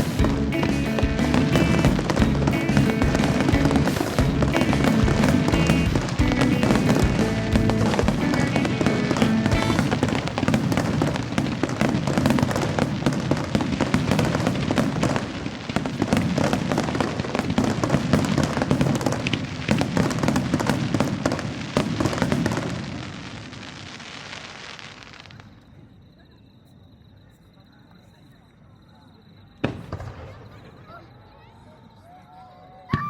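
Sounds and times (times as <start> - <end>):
music playing: 0.0 - 10.2
fireworks bangs and crackling: 0.0 - 25.9, 29.6 - 31.2.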